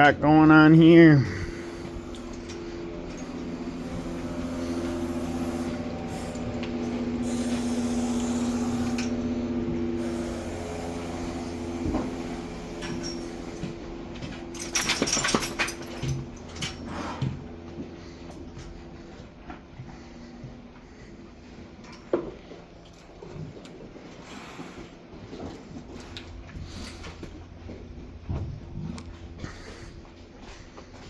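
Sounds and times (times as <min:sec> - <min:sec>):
low hum: 0:00.0 - 0:19.1
knocks and rattles: 0:14.6 - 0:16.8.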